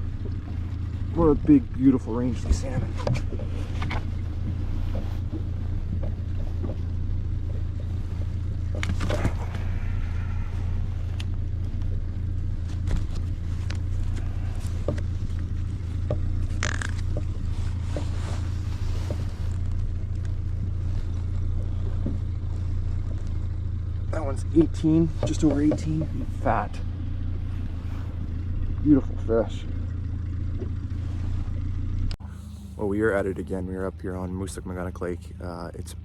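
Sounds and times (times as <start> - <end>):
boat motor droning: 0.0 - 36.0
knocks and scrapes in boat: 0.2 - 32.1.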